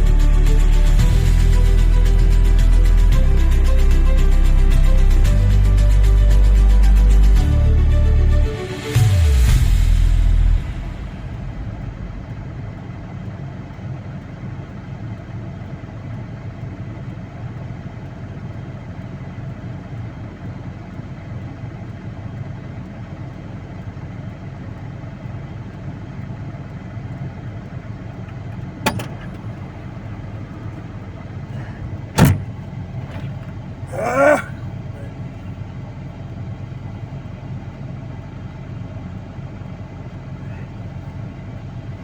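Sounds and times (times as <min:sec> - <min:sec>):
vehicle engine humming: 0:00.0 - 0:42.0
sharp knocks: 0:28.8 - 0:29.6, 0:32.1 - 0:33.5.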